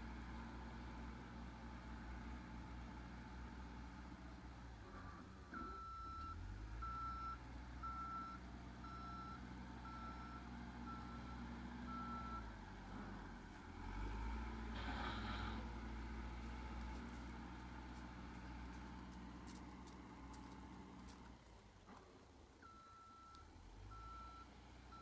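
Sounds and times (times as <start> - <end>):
diesel engine running: 0.0 - 25.0
reversing alarm beeping: 5.1 - 12.5.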